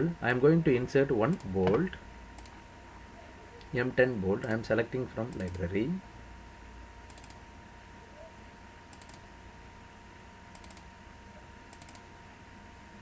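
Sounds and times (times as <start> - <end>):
electrical hum: 0.0 - 13.0
computer mouse clicking: 2.4 - 2.6, 5.3 - 5.6, 7.1 - 7.4, 8.9 - 9.2, 10.5 - 10.9, 11.7 - 12.0.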